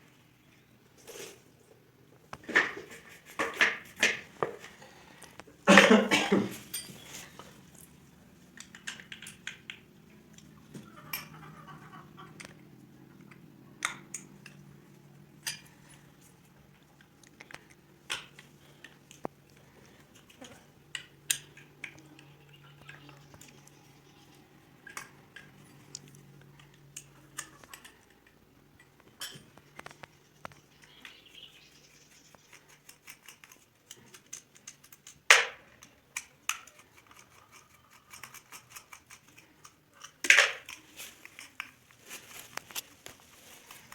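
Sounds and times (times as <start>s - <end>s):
small metal parts clinking: 6.6s - 7.7s.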